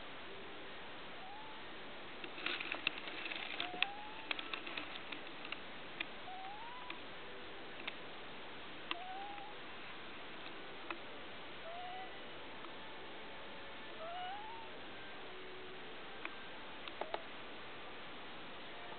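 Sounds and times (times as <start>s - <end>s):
faint sharp clicks: 7.8s - 8.0s.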